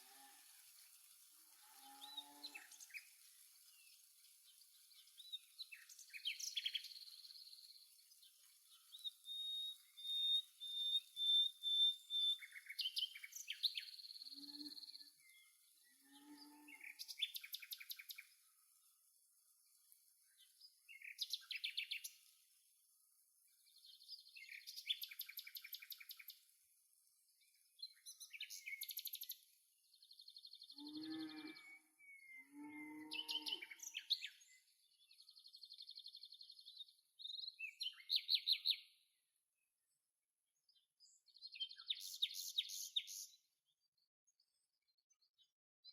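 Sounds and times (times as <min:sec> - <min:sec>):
birds chirping and trilling: 0:08.7 - 0:18.3, 0:30.0 - 0:39.0.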